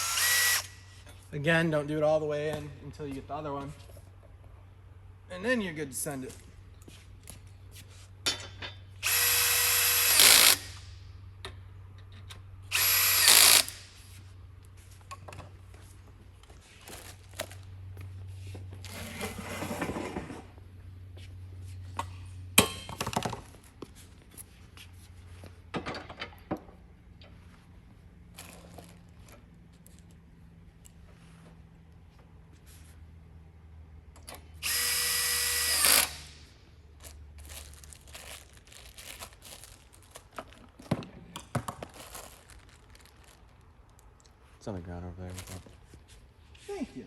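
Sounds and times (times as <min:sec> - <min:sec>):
power drill driving bolts into metal: 0:09.0 - 0:10.8, 0:12.7 - 0:13.8, 0:34.3 - 0:36.3.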